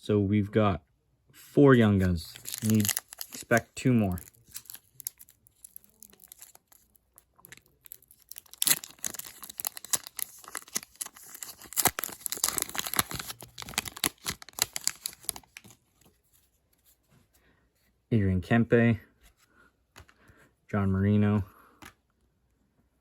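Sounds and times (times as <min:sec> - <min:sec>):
foil wrapper tearing and crinkling: 0:02.2 - 0:15.8.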